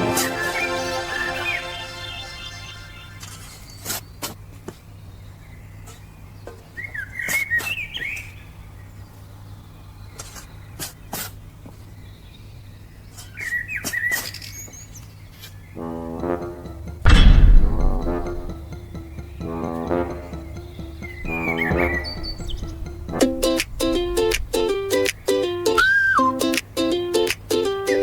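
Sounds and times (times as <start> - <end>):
steady low hum: 17.0 - 25.0
bird twittering: 20.8 - 24.8.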